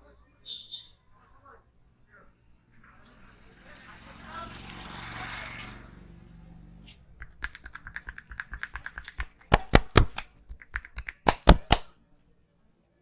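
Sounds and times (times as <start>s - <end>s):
hard hand claps: 7.2s - 11.9s
hand strikes on head: 7.3s - 11.9s.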